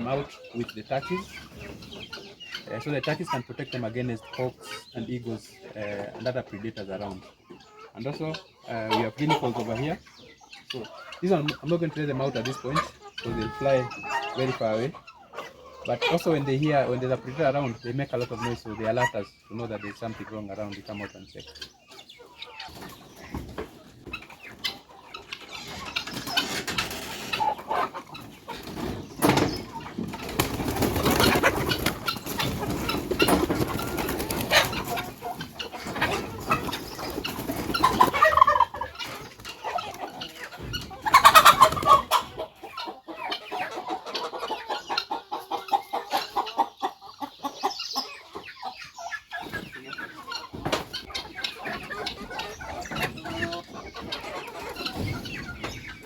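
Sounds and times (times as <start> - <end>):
chickens clucking: 0.0 - 56.0.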